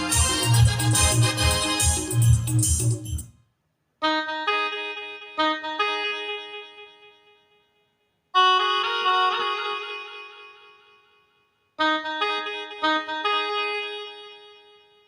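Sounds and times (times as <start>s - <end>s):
ringtone melody: 0.0s - 3.4s.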